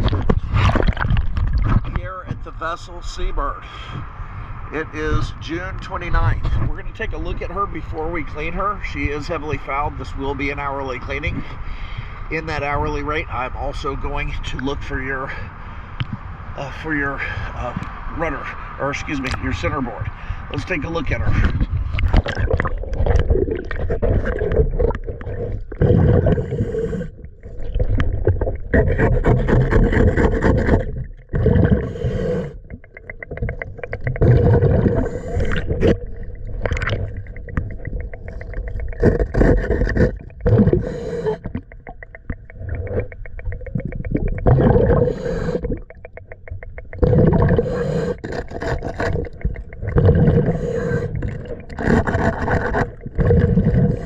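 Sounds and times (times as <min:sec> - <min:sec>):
exhaled bubbles gurgling: 0:00.0 - 0:02.5, 0:19.0 - 0:54.0
diver breathing through regulator: 0:11.4 - 0:12.3, 0:25.4 - 0:27.2, 0:28.8 - 0:32.8, 0:34.2 - 0:36.3, 0:37.6 - 0:41.7, 0:44.4 - 0:45.9, 0:47.1 - 0:54.0.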